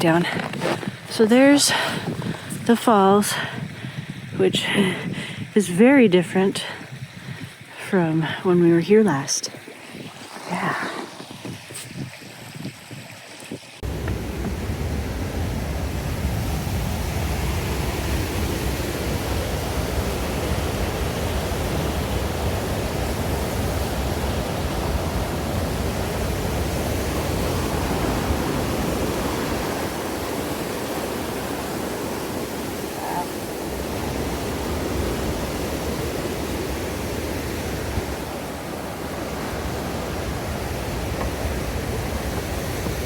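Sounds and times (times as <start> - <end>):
waterfall rushing: 13.8 - 43.0.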